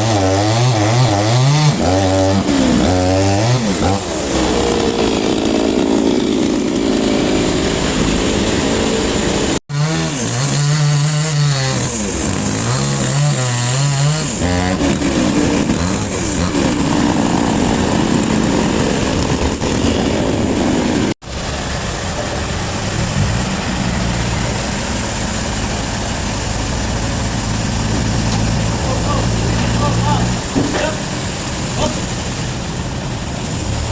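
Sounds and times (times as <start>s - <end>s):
sawmill machinery running: 0.0s - 33.9s
engine wavering in pitch: 22.0s - 33.3s.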